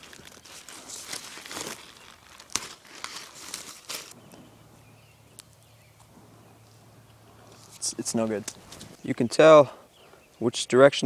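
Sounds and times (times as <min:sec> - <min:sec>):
dry plant matter crackling: 0:00.0 - 0:04.4.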